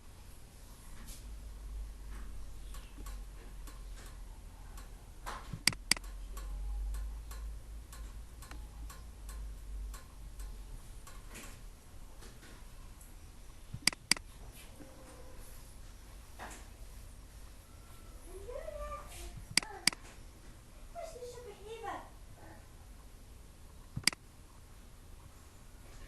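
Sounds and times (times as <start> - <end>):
faint ticking: 1.9 - 14.3, 23.6 - 24.3
sharp double clicks: 4.8 - 11.3, 13.8 - 14.3, 23.9 - 24.2.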